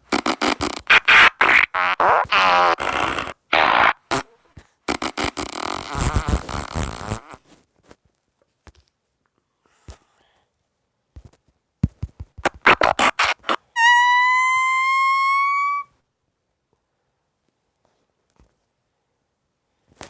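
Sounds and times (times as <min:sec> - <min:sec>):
fart sounds: 0:00.0 - 0:07.4, 0:12.4 - 0:15.9.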